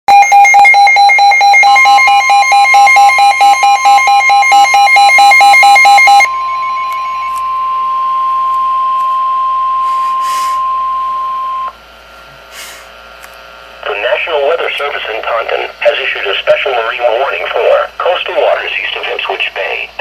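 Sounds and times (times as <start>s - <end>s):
rapid loud electronic beeping: 0.1s - 11.8s
steady alarm tone: 0.1s - 12.2s.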